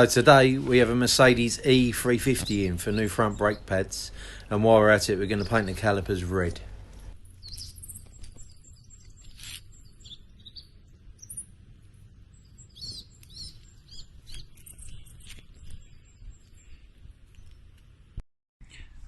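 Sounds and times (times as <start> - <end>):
birds chirping: 0.0 - 19.0.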